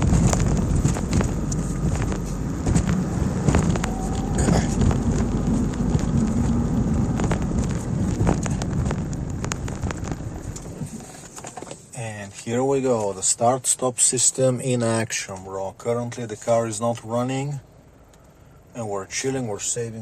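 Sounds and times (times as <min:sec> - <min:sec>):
clicks and crackles: 0:00.0 - 0:11.8
car road rumble: 0:00.0 - 0:20.0.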